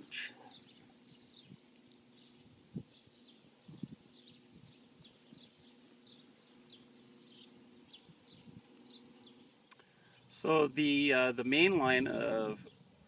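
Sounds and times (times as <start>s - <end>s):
small bird chirping: 0.0s - 10.4s.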